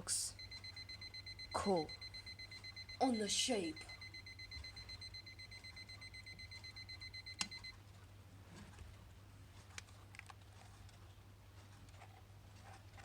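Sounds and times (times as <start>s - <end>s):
alarm clock beeping: 0.0s - 7.7s.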